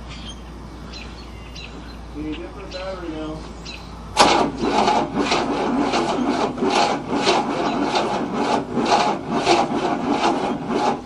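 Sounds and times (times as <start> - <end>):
engine cranking on starter: 4.0 - 11.0.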